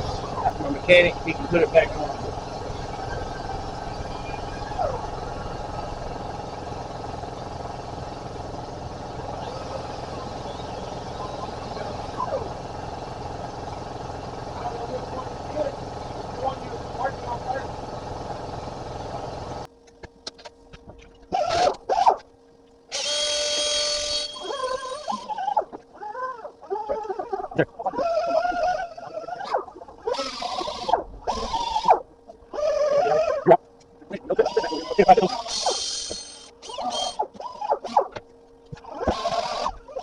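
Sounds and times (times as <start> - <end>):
power tool whining: 0.0 - 19.8, 21.2 - 40.0
low engine-like rumble: 0.0 - 21.3.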